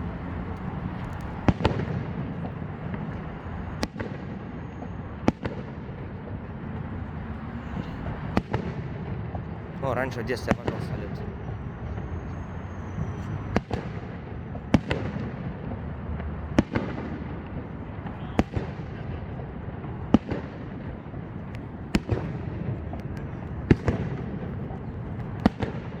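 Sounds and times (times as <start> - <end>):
fireworks bangs: 0.0 - 6.7, 7.4 - 9.4, 16.5 - 26.0.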